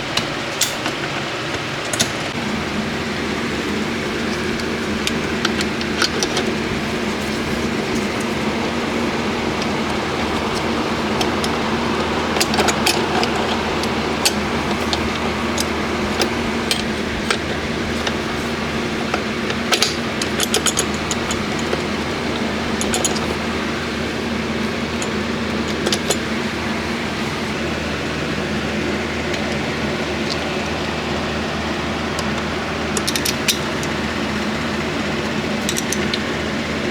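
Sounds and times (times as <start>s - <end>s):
shop machine humming: 0.0s - 36.9s
metallic clicks and clinks: 19.5s - 23.5s, 33.0s - 34.0s, 35.6s - 36.2s.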